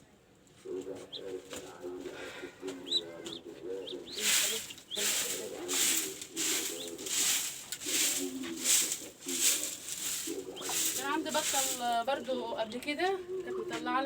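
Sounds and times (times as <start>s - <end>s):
low cooing: 0.6s - 11.0s
ducklings peeping: 0.6s - 11.8s.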